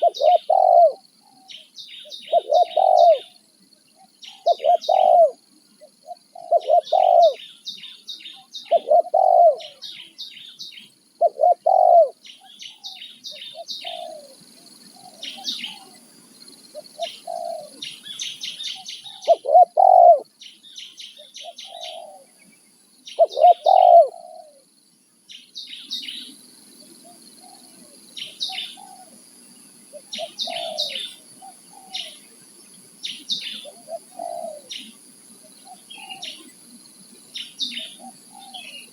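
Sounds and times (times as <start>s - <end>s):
doves cooing: 0.0s - 3.4s, 4.0s - 7.6s, 8.4s - 10.0s, 11.2s - 12.2s, 12.8s - 16.1s, 16.7s - 20.3s, 21.4s - 22.4s, 23.2s - 24.7s, 27.0s - 29.2s, 29.9s - 32.3s, 33.2s - 36.6s, 37.6s - 38.9s
small birds chirping: 0.0s - 38.9s.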